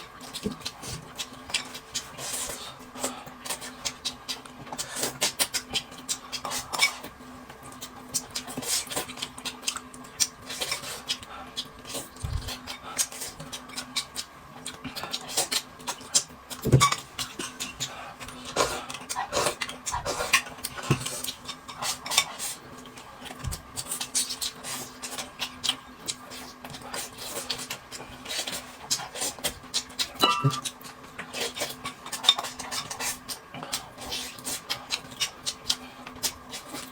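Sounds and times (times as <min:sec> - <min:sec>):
chewing and slurping: 0:00.2 - 0:36.9
utensils clinking on dishes: 0:30.2 - 0:30.7.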